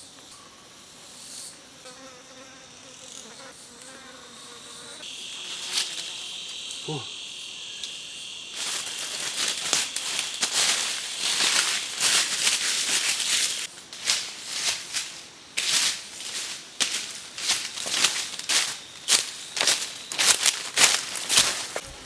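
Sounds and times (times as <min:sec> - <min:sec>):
high insect drone: 0:00.0 - 0:22.0
dry leaves rustling and crackling: 0:08.5 - 0:22.0.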